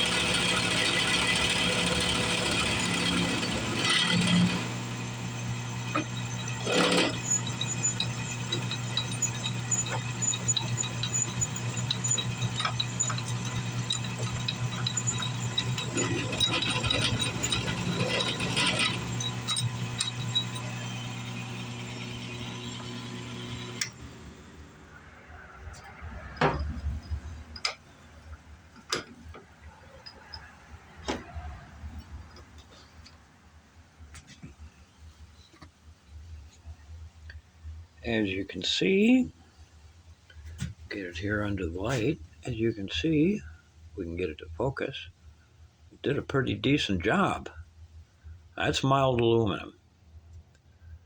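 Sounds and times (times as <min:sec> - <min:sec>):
cutter milling aluminum: 0:00.0 - 0:24.0
drill press motor hum: 0:00.0 - 0:25.0.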